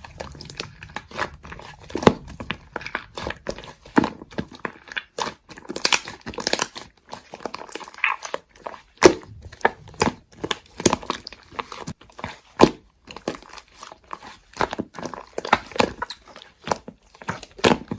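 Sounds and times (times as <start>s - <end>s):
slime popping and squishing: 0.0s - 17.9s.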